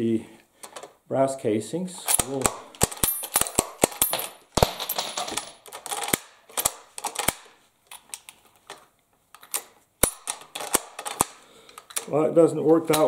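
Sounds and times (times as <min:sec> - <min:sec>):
rifle bolt clicks and clacks: 0:02.1 - 0:12.2
bolt sliding rasps: 0:05.3 - 0:13.0.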